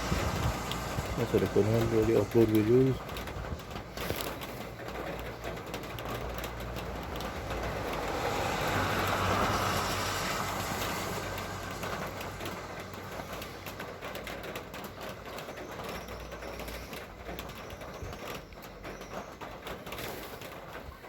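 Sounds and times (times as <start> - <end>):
vehicle passing: 0.0 - 3.1, 6.0 - 13.9.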